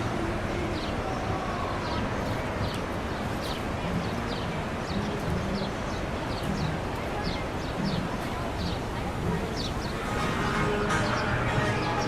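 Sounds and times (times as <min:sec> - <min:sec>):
waterfall roaring: 0:00.0 - 0:12.0.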